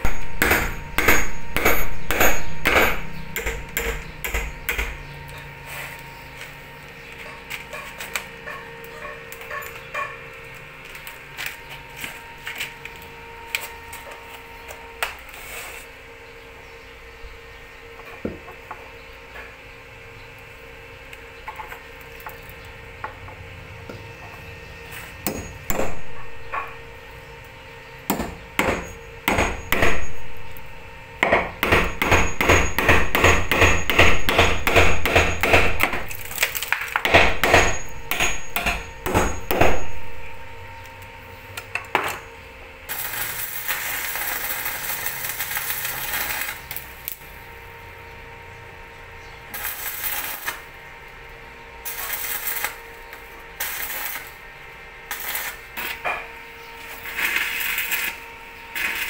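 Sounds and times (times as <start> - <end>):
hammer striking nails into wood: 0.0 - 5.0, 31.2 - 36.0, 37.0 - 39.8.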